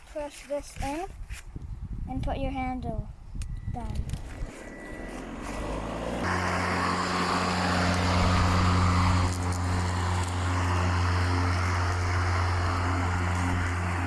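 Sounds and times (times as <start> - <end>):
electric lawnmower humming: 4.2 - 14.0.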